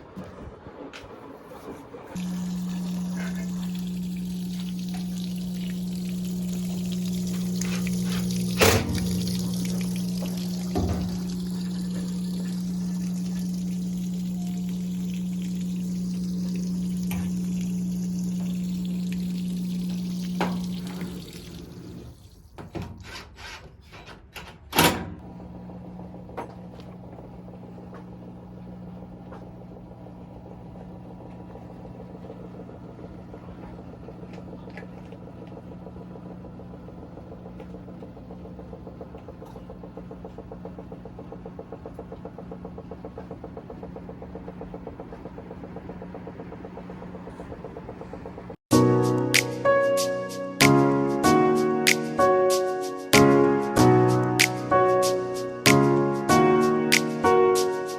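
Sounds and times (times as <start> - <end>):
washing machine humming: 0.0 - 22.7, 25.2 - 57.9
washing machine water pumping: 1.4 - 23.1, 25.2 - 57.9.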